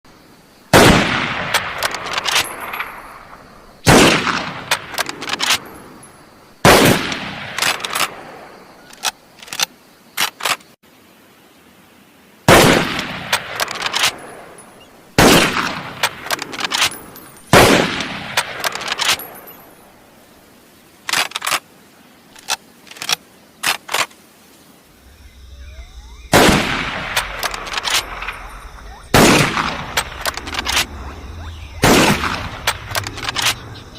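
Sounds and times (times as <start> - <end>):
rifle shots echoing: 0.7 - 6.0, 6.6 - 8.4, 12.5 - 20.0, 25.9 - 33.9
sharp clicks: 25.4 - 33.8.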